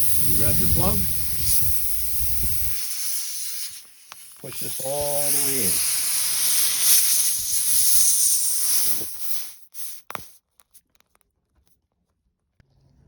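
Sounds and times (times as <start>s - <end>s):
air hissing from tire: 0.0s - 10.4s.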